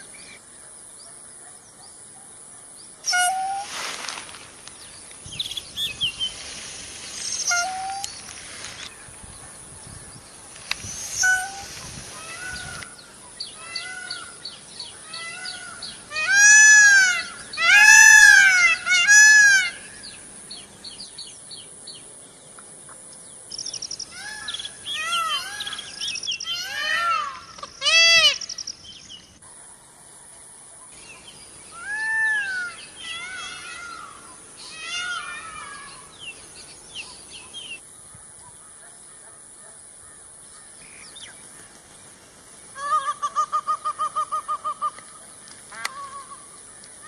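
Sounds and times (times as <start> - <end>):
peafowl wailing calls: 3.1 - 4.1, 7.1 - 8.9, 10.9 - 13.0, 13.6 - 20.0, 24.1 - 28.6, 31.7 - 36.1, 42.8 - 45.1.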